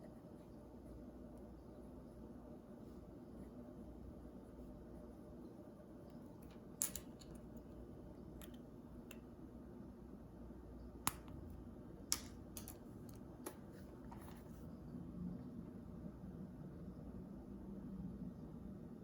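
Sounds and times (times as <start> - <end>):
pens clicking on desk: 12.1 - 14.3.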